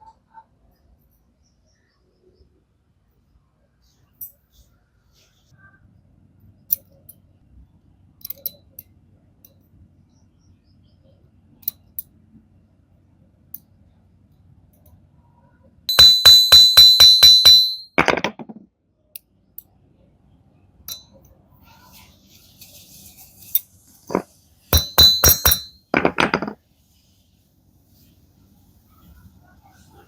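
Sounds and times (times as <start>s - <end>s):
faint small metal clicks: 6.7s - 7.2s, 8.2s - 9.6s, 11.6s - 12.2s
metal clinking with ringing tone: 15.9s - 18.4s, 20.9s - 21.4s, 23.4s - 26.6s.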